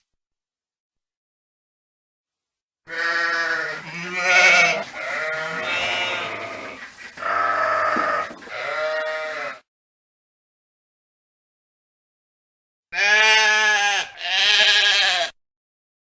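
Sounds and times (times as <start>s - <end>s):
sheep bleating: 2.9s - 9.7s, 12.9s - 15.4s.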